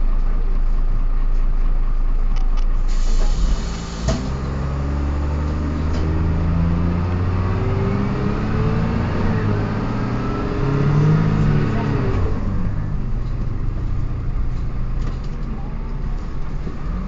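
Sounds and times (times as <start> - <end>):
bus pulling away with gear whine: 2.7 - 17.0
air brake hiss: 2.9 - 4.4.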